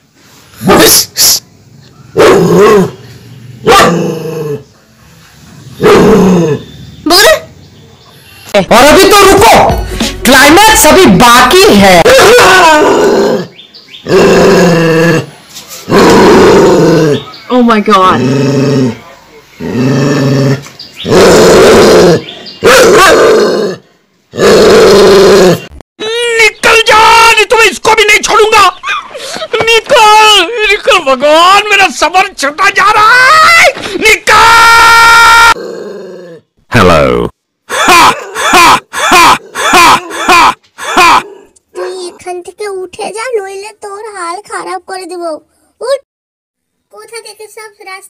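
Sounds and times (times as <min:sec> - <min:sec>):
dog growling and barking: 0:02.2 - 0:03.0, 0:03.6 - 0:04.7, 0:05.8 - 0:06.7, 0:12.0 - 0:17.4, 0:18.0 - 0:25.7, 0:35.4 - 0:36.4, 0:37.8 - 0:42.2
dog barking loudly: 0:03.6 - 0:04.0, 0:22.6 - 0:23.4, 0:37.8 - 0:41.3.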